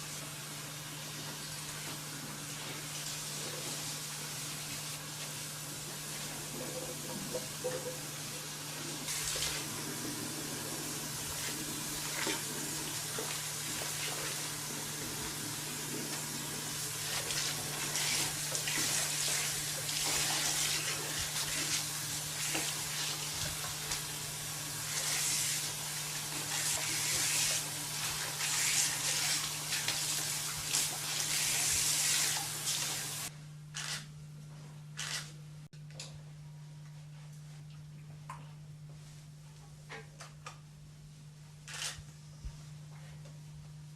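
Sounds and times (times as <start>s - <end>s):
water running and spraying: 0.0s - 33.3s.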